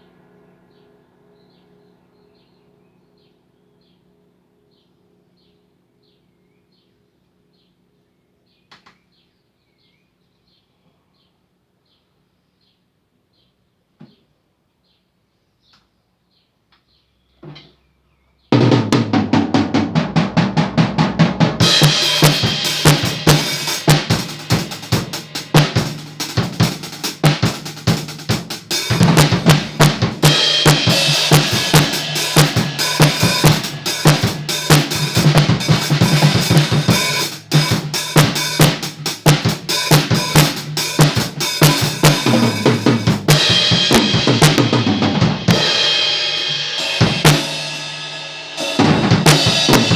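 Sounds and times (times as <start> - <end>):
acoustic drum kit playing: 18.6 - 49.9
cymbals ringing: 21.6 - 49.9.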